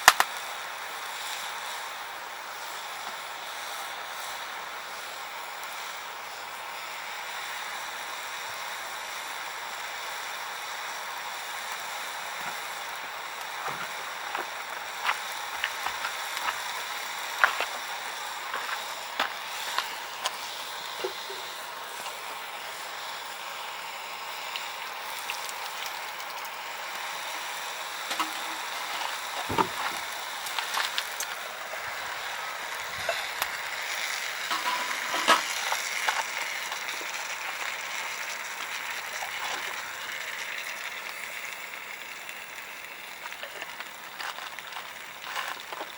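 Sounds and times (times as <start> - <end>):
firewood crackling and popping: 0.0 - 45.9
sizzling hiss: 0.0 - 45.9
heavy knock: 29.5 - 30.1.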